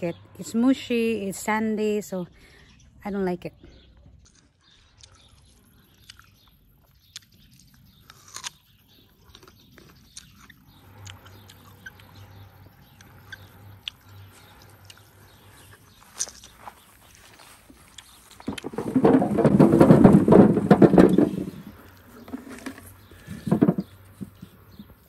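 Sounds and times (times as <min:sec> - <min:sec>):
person chewing a crunchy pear: 0:04.0 - 0:18.6.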